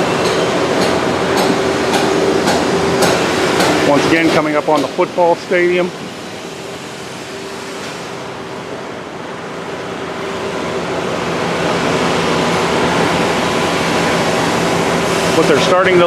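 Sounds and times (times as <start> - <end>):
steady mechanical hum: 0.0 - 16.0
rushing noise: 5.5 - 16.0.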